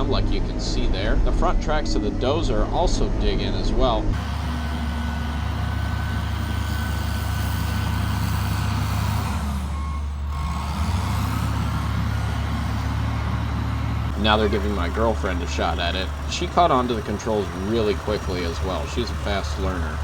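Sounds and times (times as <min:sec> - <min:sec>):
bulldozer diesel engine under load: 0:04.1 - 0:20.0.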